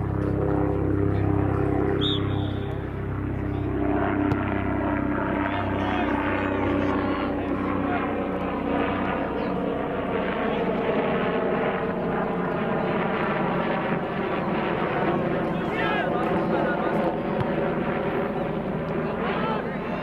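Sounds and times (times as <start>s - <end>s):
low engine drone: 0.0s - 9.7s
faint voices: 0.0s - 20.0s.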